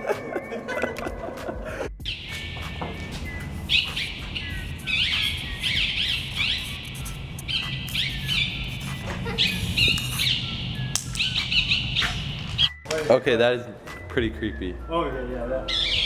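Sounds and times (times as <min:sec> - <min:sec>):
small birds chirping: 0:02.0 - 0:12.9, 0:15.6 - 0:16.0.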